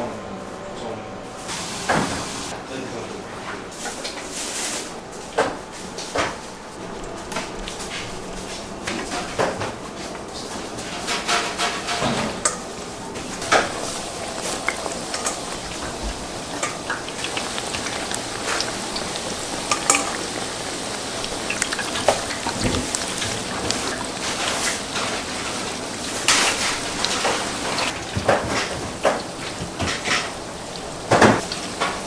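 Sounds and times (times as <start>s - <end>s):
metal utensils and pans clattering: 8.8s - 32.0s.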